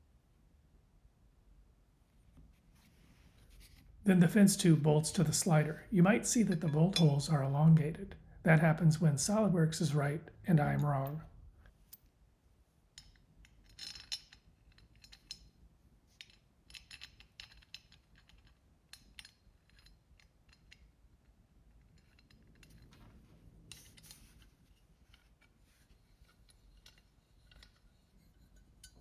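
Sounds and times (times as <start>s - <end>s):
small metal parts clinking: 13.0s - 20.9s, 21.9s - 29.0s.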